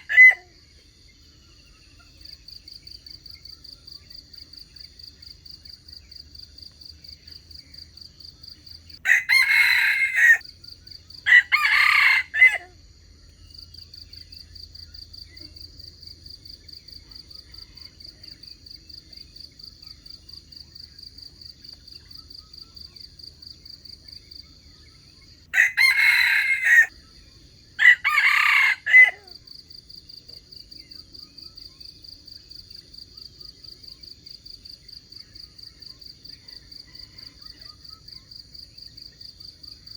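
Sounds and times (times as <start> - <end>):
rooster crowing: 0.0 - 0.4, 9.0 - 10.4, 11.2 - 12.8, 25.5 - 26.9, 27.8 - 29.4.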